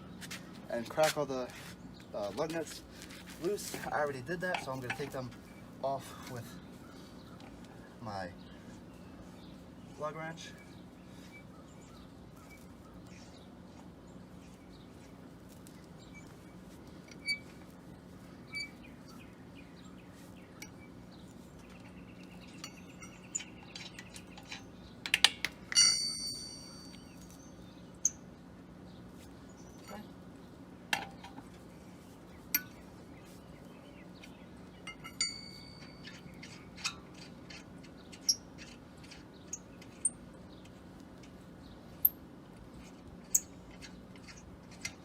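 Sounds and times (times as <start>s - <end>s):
metal clicks and clinks: 34.8s - 38.4s.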